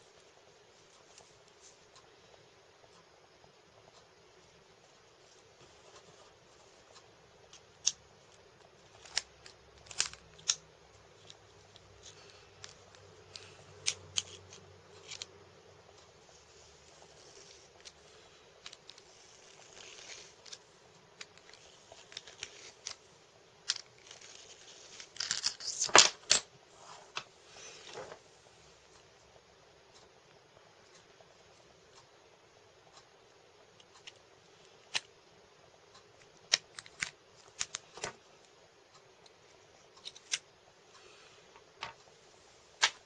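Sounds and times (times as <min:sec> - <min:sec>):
wristwatch clicks and scrapes: 0:16.9 - 0:23.0.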